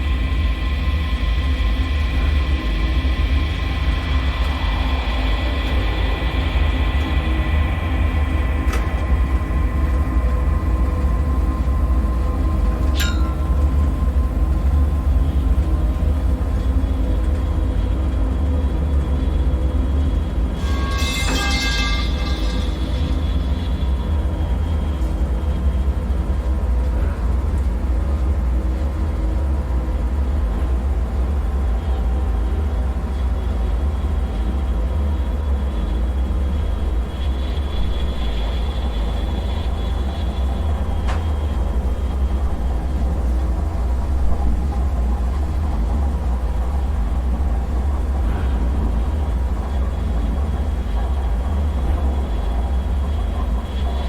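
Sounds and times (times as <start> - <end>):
deep rumble: 0.0 - 20.6.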